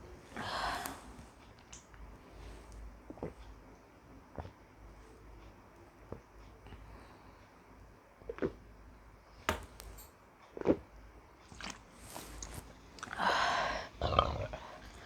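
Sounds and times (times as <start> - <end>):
noisy gulping: 3.0 - 3.6, 8.3 - 8.7, 11.5 - 15.0.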